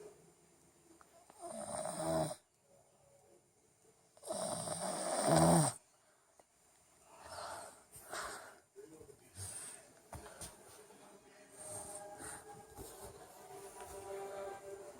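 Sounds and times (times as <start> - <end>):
child snoring: 1.4 - 2.4, 4.2 - 5.8.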